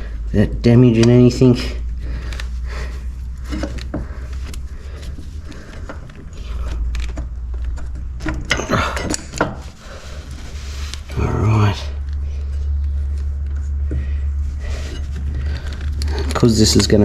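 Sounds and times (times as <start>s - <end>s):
steady low hum: 0.0s - 17.0s
metal clinks and knocks: 3.4s - 4.6s, 5.6s - 9.7s.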